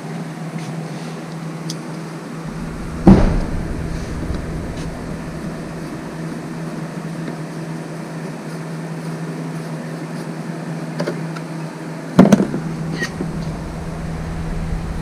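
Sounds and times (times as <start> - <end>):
low mechanical hum: 2.4 - 7.6, 12.3 - 15.0
heavy thump: 2.5 - 7.0, 12.5 - 15.0.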